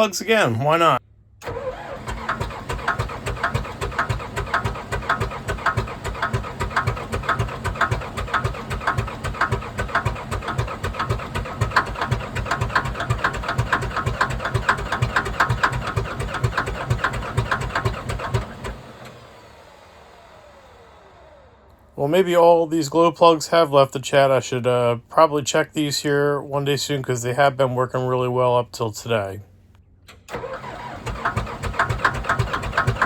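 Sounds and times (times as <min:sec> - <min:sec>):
diesel engine cranking: 0:00.3 - 0:22.7, 0:30.1 - 0:33.0.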